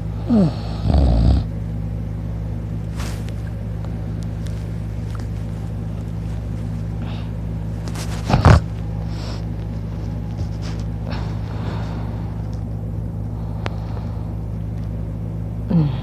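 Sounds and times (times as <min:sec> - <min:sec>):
steady low hum: 0:00.0 - 0:16.0
man snoring: 0:00.2 - 0:01.5, 0:08.3 - 0:08.7, 0:15.7 - 0:16.0
faint breaths: 0:10.6 - 0:12.6, 0:13.2 - 0:14.6.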